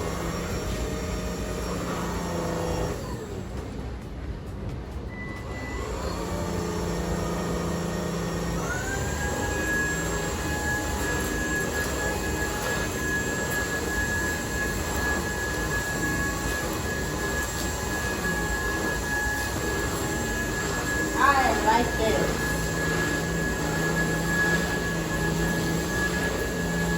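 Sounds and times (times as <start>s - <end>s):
stick vacuum motor whine: 0.0s - 3.8s, 5.2s - 26.9s
rushing suction noise: 6.1s - 26.9s.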